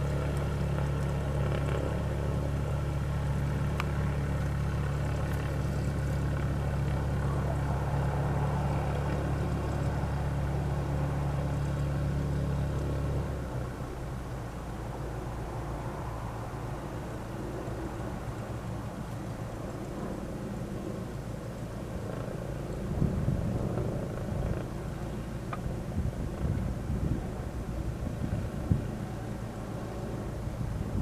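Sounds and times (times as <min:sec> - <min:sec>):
engine idling: 0:00.0 - 0:31.0.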